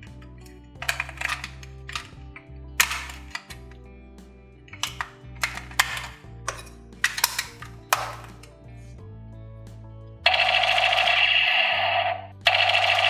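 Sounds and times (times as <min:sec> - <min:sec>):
backing music: 0:00.0 - 0:13.0
sharp plastic clacks: 0:04.8 - 0:08.5
buzzing toy gun sound effect: 0:10.3 - 0:13.0.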